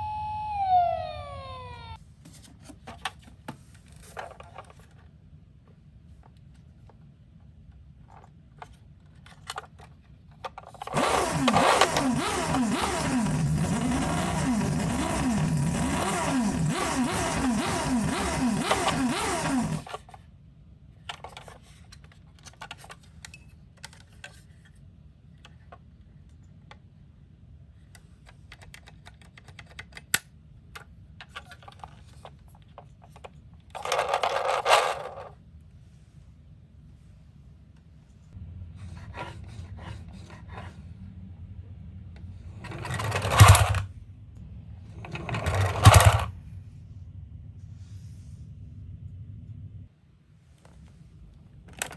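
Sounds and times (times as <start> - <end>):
toy siren wailing: 0.0 - 2.0.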